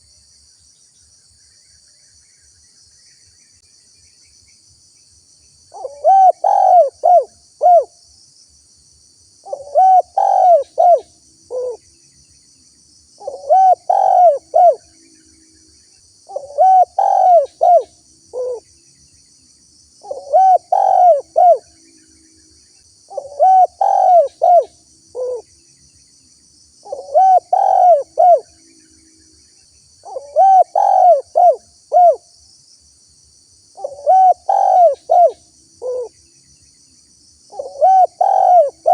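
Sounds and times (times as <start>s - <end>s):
high insect buzz: 0.0s - 38.9s
dove cooing: 5.8s - 7.9s, 9.5s - 11.8s, 13.2s - 14.8s, 16.3s - 18.6s, 20.0s - 21.7s, 23.1s - 25.5s, 26.8s - 28.5s, 30.0s - 32.2s, 33.8s - 36.1s, 37.5s - 38.9s.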